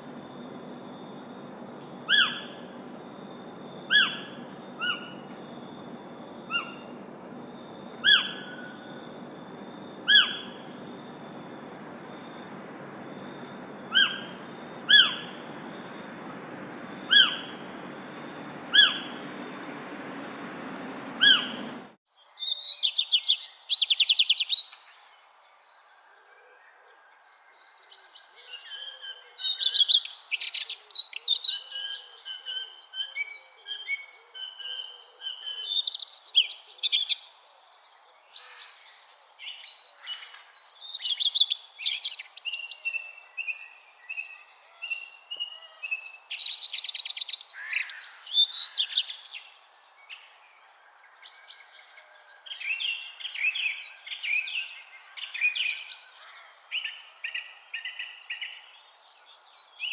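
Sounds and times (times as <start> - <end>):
bird trilling and singing: 0.0 - 21.9
bird falling call: 0.0 - 22.0
steady hiss: 0.0 - 22.0.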